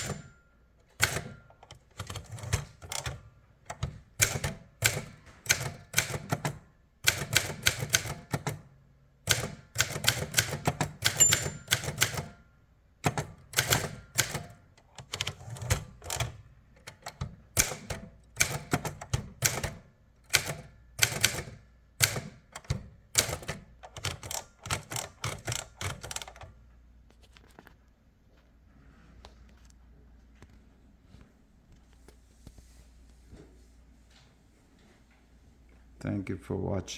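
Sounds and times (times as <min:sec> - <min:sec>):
typewriter key strikes: 0:00.0 - 0:08.6, 0:09.3 - 0:12.4, 0:13.0 - 0:26.5.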